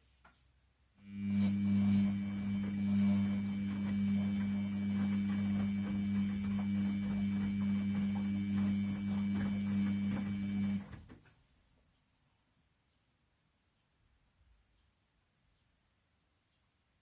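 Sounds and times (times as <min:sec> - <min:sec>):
washing machine humming: 0:01.0 - 0:11.2.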